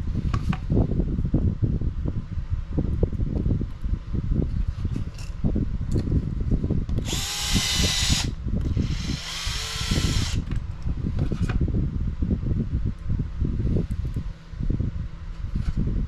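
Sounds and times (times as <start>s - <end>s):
steady low rumble: 0.0s - 16.0s
cordless electric screwdriver running: 7.0s - 10.5s.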